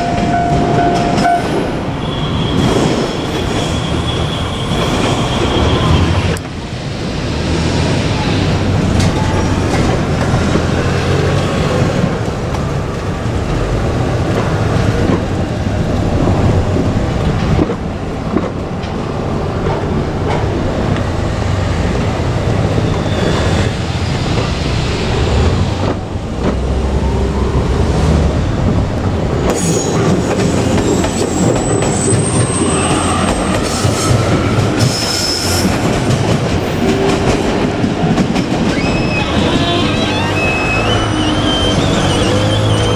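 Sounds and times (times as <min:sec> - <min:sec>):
train wheels rumbling on rails: 0:00.0 - 0:42.9
high-pitched wheel squeals: 0:29.6 - 0:34.2, 0:38.7 - 0:42.9.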